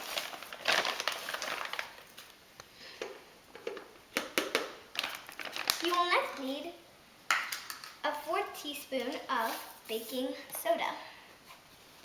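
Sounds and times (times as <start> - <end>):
flour bag rustling: 0.0 - 2.4, 4.9 - 6.4, 9.1 - 10.2
flour scooped and poured: 8.1 - 10.4.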